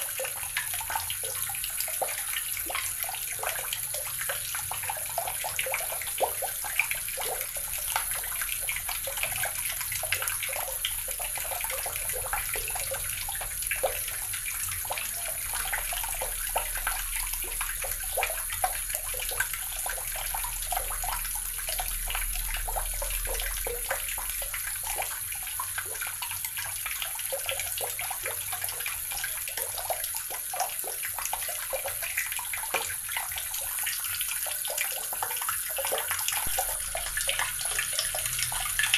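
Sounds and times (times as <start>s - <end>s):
tap water running into basin: 0.0s - 38.9s.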